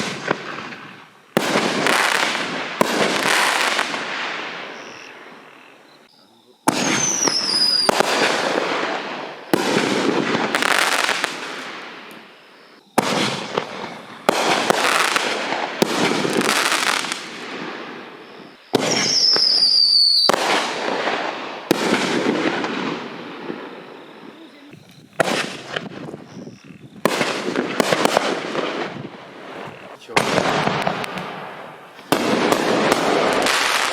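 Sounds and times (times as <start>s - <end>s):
firework crackle: 0.0s - 5.4s, 6.7s - 33.9s
firework shell reports: 6.1s - 8.7s, 29.6s - 31.2s.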